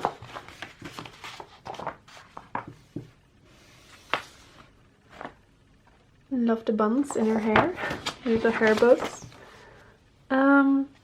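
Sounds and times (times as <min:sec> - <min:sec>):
paper rustling: 0:00.0 - 0:05.4, 0:07.0 - 0:09.6.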